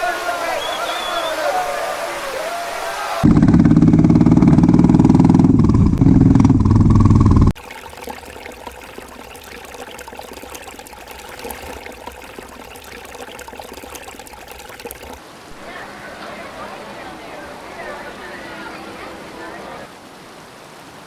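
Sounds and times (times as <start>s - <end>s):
loud low engine: 3.2s - 7.5s.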